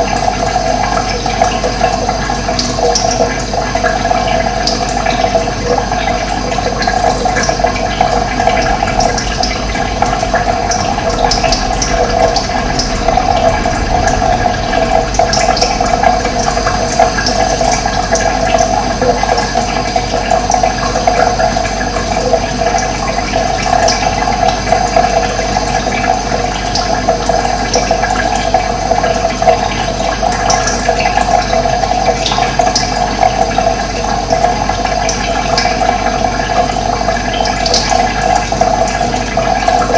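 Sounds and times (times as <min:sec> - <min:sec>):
running water babbling: 0:00.0 - 0:29.0.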